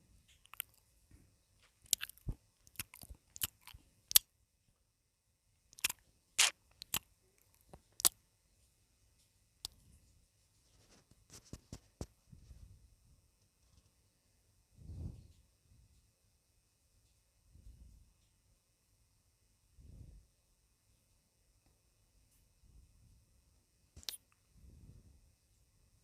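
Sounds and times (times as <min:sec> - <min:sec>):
close-miked chewing smacks: 0:00.4 - 0:00.8, 0:01.8 - 0:04.2, 0:05.8 - 0:08.2, 0:24.0 - 0:24.4.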